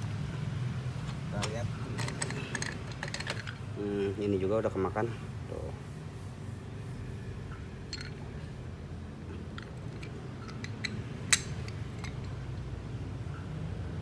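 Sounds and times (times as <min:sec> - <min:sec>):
small metal parts clinking: 0:01.9 - 0:03.8, 0:07.9 - 0:08.5, 0:09.3 - 0:12.6.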